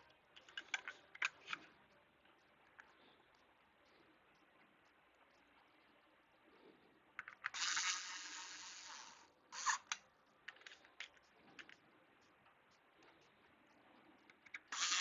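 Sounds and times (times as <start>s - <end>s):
light clicks of computer parts: 0.0s - 5.5s, 7.1s - 7.6s, 9.7s - 14.8s.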